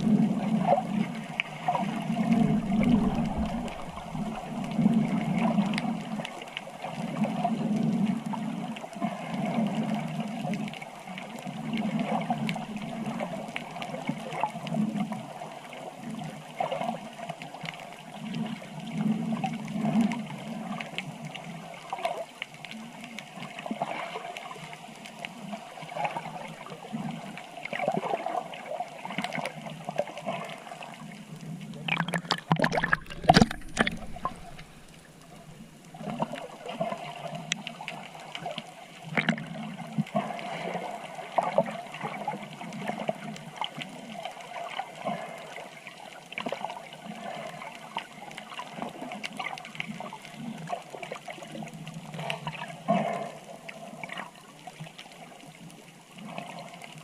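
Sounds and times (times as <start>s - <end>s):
water sloshing and gurgling: 0.0s - 55.5s
rumbling disturbance: 2.1s - 5.1s, 32.7s - 36.3s.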